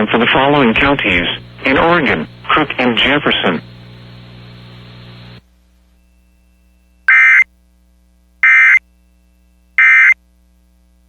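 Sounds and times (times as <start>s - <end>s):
buzzy digital data tone bursts: 0.5s - 5.4s, 6.6s - 7.5s, 8.4s - 10.2s.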